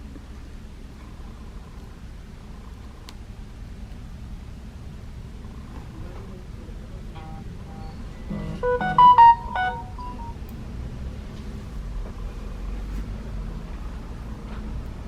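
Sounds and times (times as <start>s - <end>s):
smartphone electronic chime: 8.3s - 10.4s.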